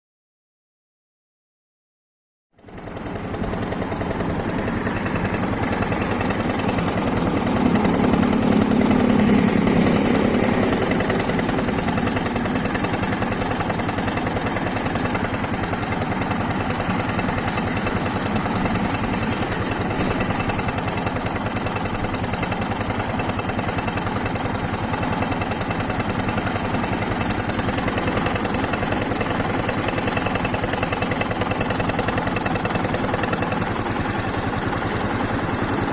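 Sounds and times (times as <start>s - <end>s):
motorcycle engine idling: 2.6s - 35.9s
fast clattering valve tick: 10.4s - 33.8s.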